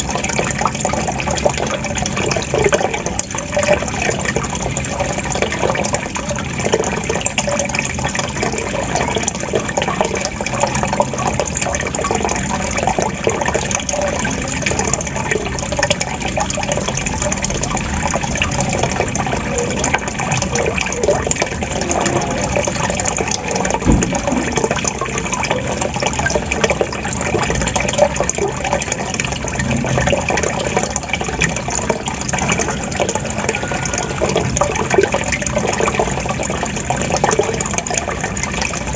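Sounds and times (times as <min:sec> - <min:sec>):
water trickling and gurgling: 0:00.0 - 0:38.9.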